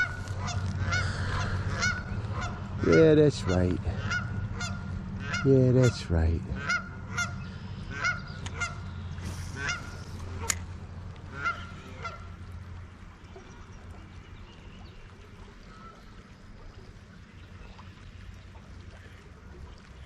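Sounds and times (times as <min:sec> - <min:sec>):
geese honking: 0:00.0 - 0:10.6, 0:11.3 - 0:12.3
steady low rumble: 0:00.0 - 0:20.0.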